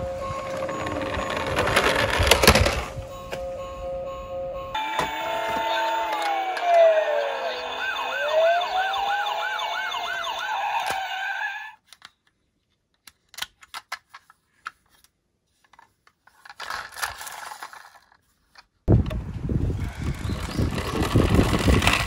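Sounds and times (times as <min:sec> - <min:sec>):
toy electronic sirens: 0:00.0 - 0:11.8
toy cars clicking on plastic track: 0:00.5 - 0:02.8, 0:15.7 - 0:18.7, 0:19.9 - 0:22.0.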